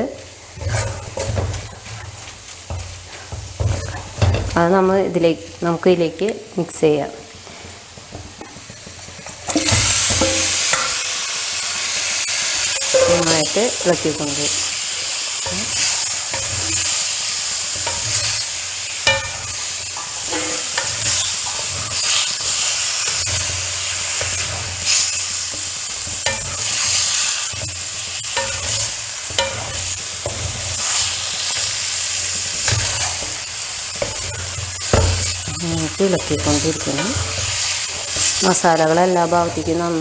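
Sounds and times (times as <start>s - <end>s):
spoon scraping pan: 0.5s - 5.0s, 8.8s - 40.0s
chicken sizzling in oil: 7.7s - 40.0s
spoon knocking on metal: 9.5s - 11.0s, 19.0s - 21.8s.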